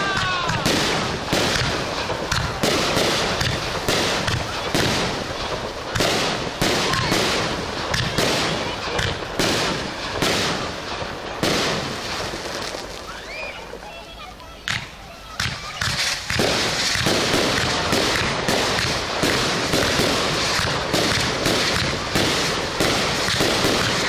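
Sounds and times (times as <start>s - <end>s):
firework crackling: 0.0s - 24.0s
firework shells bursting: 0.0s - 24.0s
firework whistle: 9.8s - 24.0s.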